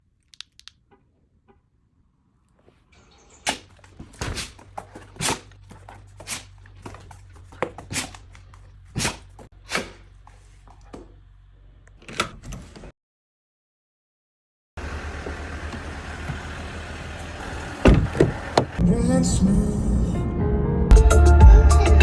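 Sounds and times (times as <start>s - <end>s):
truck engine humming: 3.0s - 12.0s, 14.8s - 20.2s.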